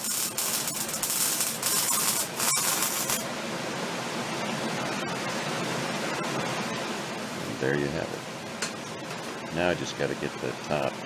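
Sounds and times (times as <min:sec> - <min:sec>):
welding arc crackling: 0:00.0 - 0:03.3.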